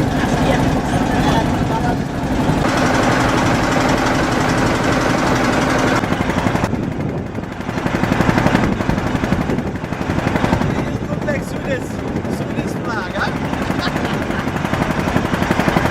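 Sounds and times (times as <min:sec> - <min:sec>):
boat engine knocking: 0:00.0 - 0:15.9.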